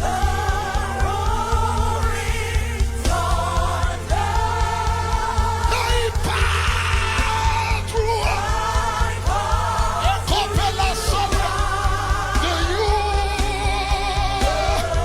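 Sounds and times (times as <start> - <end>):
bass line: 0.0 - 15.0.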